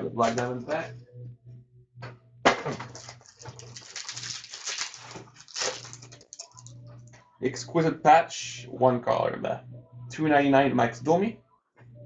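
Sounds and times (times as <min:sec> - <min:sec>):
wrapper crackling and rustling: 0:03.0 - 0:06.7
wrapper ripping: 0:03.0 - 0:06.7.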